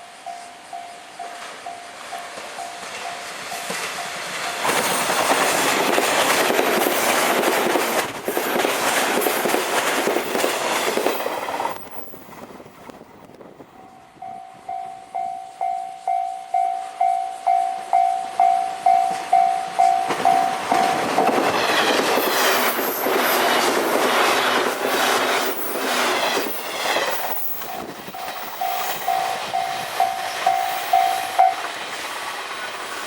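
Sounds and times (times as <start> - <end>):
level-crossing bell dinging: 0.0 - 5.5, 13.8 - 21.4, 27.4 - 31.8
train passing on rails: 0.0 - 33.0.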